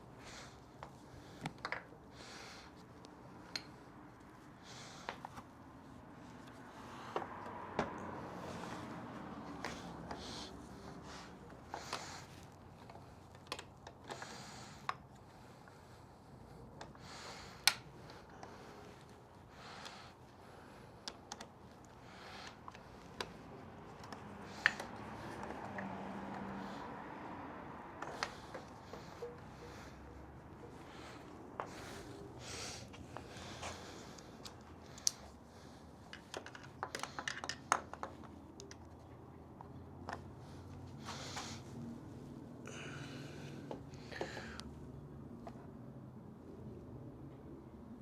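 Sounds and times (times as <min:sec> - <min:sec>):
soft breaths: 0:00.0 - 0:48.0
small tools clicking and tapping: 0:00.8 - 0:02.0, 0:03.0 - 0:03.8, 0:11.7 - 0:15.2, 0:16.8 - 0:18.6, 0:20.9 - 0:26.6, 0:34.1 - 0:35.4, 0:36.0 - 0:40.4.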